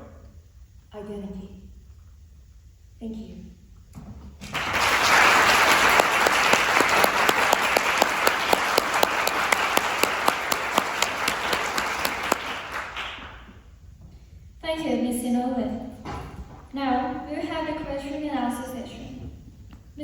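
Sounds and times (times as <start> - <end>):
audience applauding: 4.4 - 13.5.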